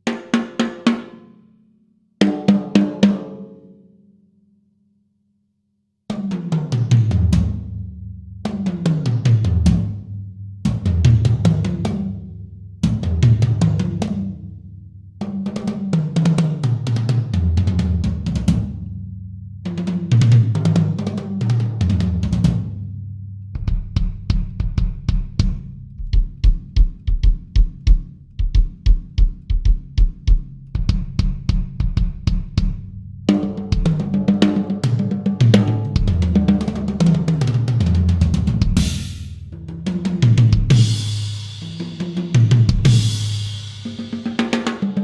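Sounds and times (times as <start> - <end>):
drum kit playing: 0.0 - 1.2, 2.2 - 3.4, 23.6 - 45.0.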